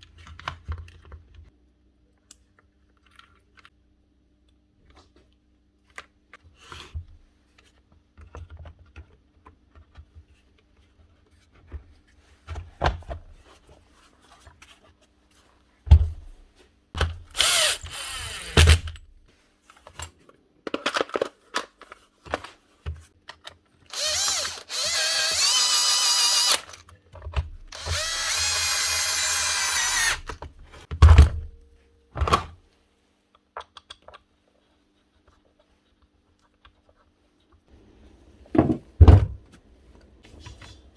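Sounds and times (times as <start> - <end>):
small power tool motor whining: 17.3 - 18.8, 23.9 - 26.8, 27.7 - 30.4
clicks and knocks of parts: 19.7 - 24.8, 33.3 - 34.3.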